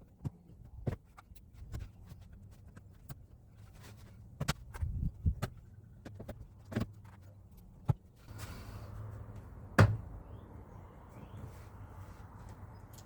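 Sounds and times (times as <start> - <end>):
rustling or scraping: 8.2 - 9.5
knocks and thumps: 9.8 - 10.1.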